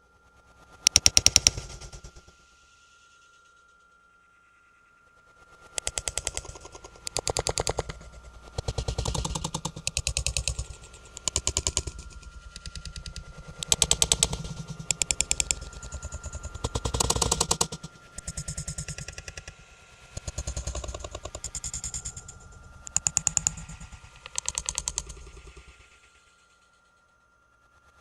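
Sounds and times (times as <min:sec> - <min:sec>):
rapid rattling clicks: 0:05.8 - 0:08.0, 0:08.6 - 0:15.9, 0:16.6 - 0:19.5, 0:20.2 - 0:22.1, 0:22.9 - 0:25.6.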